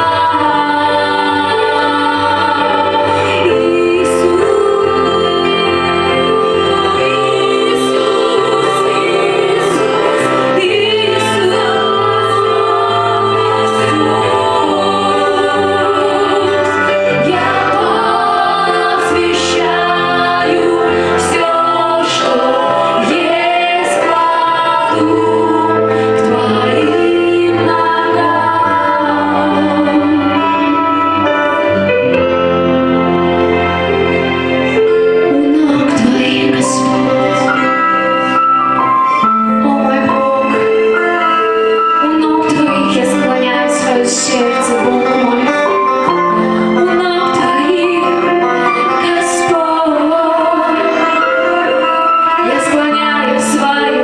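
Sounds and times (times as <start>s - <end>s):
instrumental accompaniment with bass: 0.0s - 54.0s
voices singing worship song: 0.0s - 54.0s.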